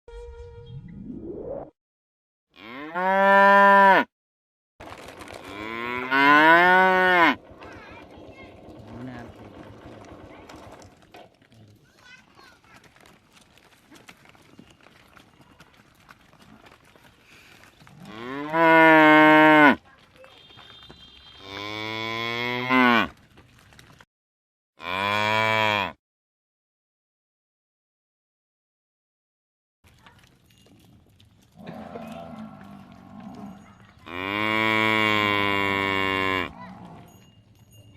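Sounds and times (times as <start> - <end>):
buffalo bellowing: 5.5 - 7.4, 18.0 - 19.8, 31.6 - 37.1.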